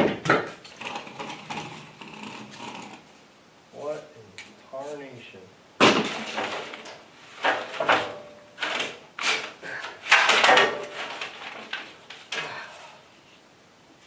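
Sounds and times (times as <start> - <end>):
metal parts clunking and rattling: 5.8 - 12.8.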